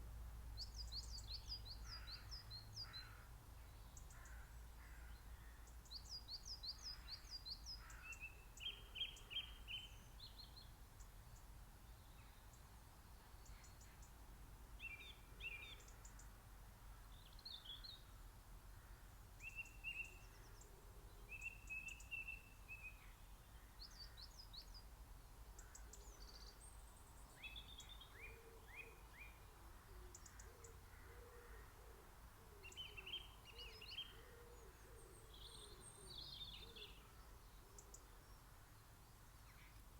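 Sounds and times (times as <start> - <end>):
songbirds chirping and trilling: 0.4 - 39.9.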